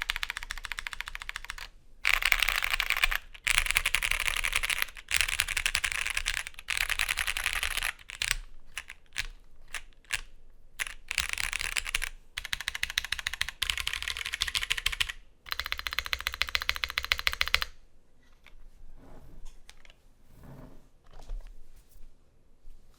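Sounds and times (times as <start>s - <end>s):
typing on mechanical keyboard: 0.0s - 17.8s.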